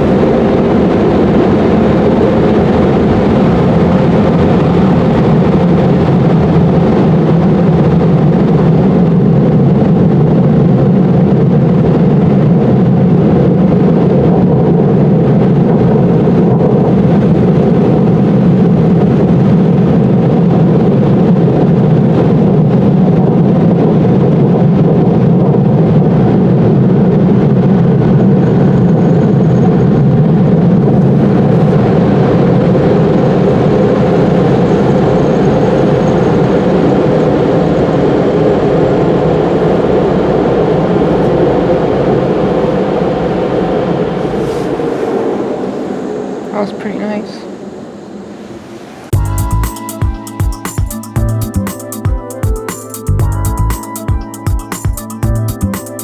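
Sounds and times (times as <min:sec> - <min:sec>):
car wash air blowers: 0:43.9 - 0:46.4.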